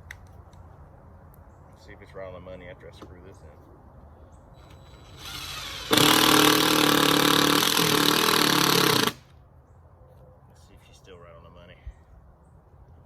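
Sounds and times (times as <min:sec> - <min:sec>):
power drill driving screw into wood: 0:04.6 - 0:09.3.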